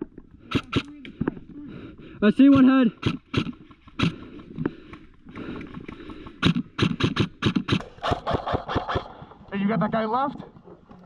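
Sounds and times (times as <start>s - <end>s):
airsoft rifle shots: 0.5s - 0.9s, 2.5s - 4.2s, 6.4s - 9.2s.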